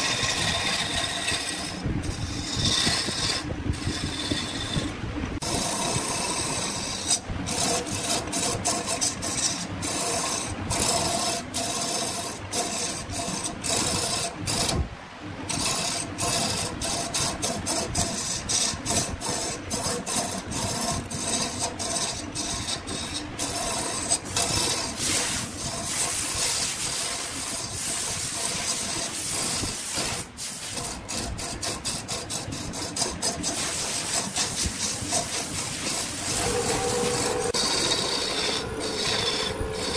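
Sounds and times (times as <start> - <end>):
tool scraping wood on lathe: 0.0 - 39.9
faint machine tone: 36.3 - 39.9.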